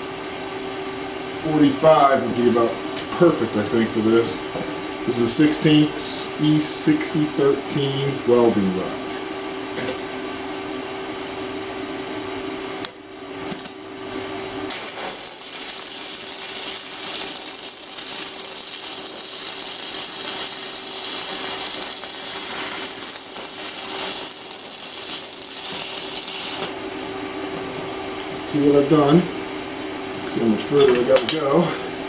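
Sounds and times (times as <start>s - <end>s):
steady hum: 0.0s - 32.0s
welding arc crackling: 14.7s - 26.8s.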